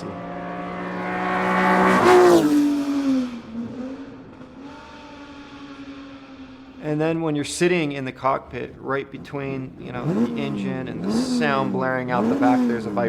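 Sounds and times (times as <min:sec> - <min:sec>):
car engine running at speed: 0:00.0 - 0:07.3, 0:08.4 - 0:13.0.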